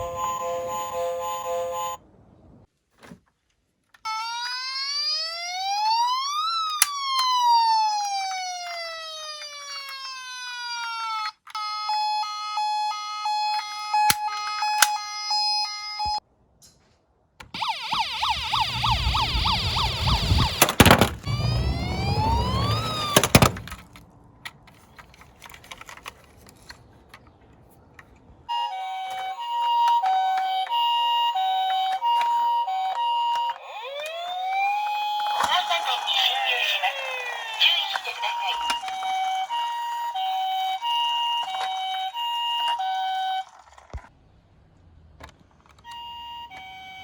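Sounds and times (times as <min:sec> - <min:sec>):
toy electronic sirens: 0:04.0 - 0:16.2, 0:17.5 - 0:23.8, 0:28.5 - 0:44.1, 0:45.8 - 0:47.0
loud rumbling noise: 0:18.3 - 0:23.8.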